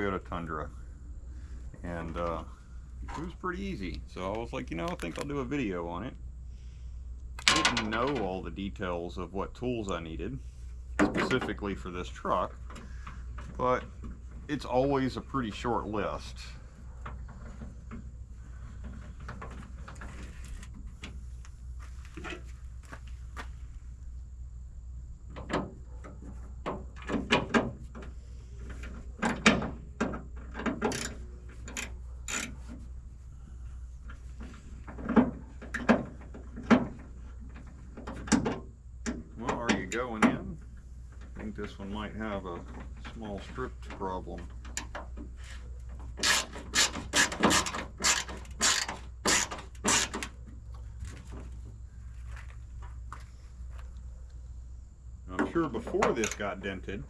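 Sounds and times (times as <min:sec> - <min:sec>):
hand tools clicking and knocking: 0:45.9 - 0:50.4.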